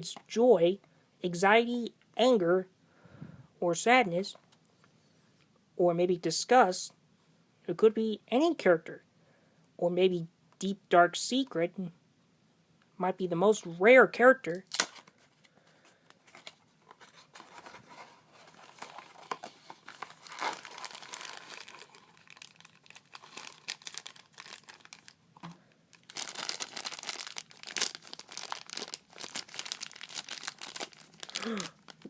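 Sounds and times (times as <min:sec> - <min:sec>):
packaging being torn and crinkled: 0:14.6 - 0:15.2, 0:18.4 - 0:25.2, 0:25.9 - 0:32.0.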